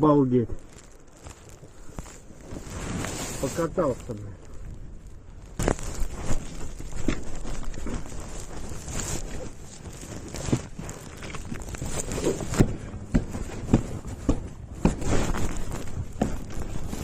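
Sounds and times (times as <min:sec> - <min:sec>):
rustling: 0:00.0 - 0:17.0
dull knocks and thumps: 0:05.6 - 0:17.0.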